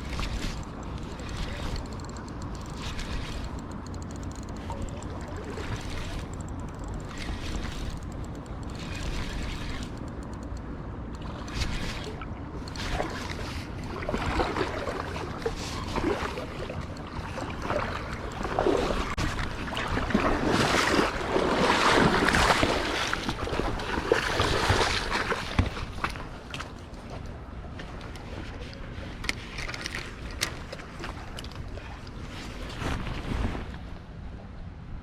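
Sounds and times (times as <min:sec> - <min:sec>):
water splashing and rushing: 0:00.0 - 0:03.9, 0:11.2 - 0:26.5.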